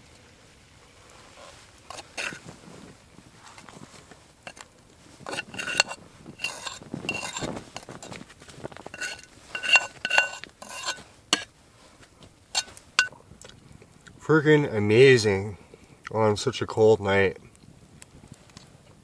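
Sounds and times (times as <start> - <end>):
metal utensil clinking on cookware: 1.9 - 2.4, 4.4 - 8.2, 8.8 - 11.5, 12.5 - 13.1.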